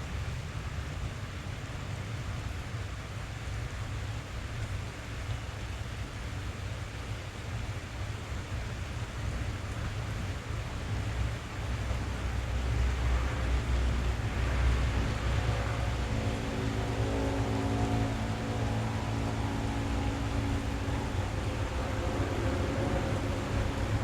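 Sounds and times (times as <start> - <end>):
rain drumming on car roof: 8.0 - 24.0.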